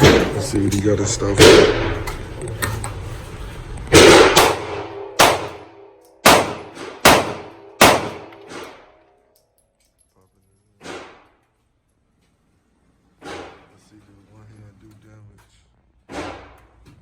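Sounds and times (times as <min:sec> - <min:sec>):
pistol shots with echo: 0:00.0 - 0:00.6, 0:01.4 - 0:02.1, 0:03.9 - 0:08.9.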